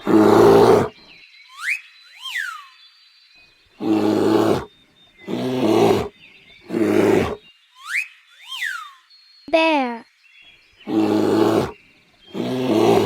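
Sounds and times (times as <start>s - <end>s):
bear roaring: 0.0s - 0.9s, 3.8s - 6.1s, 6.7s - 7.4s, 10.9s - 13.0s
high whistling glides: 0.0s - 9.4s.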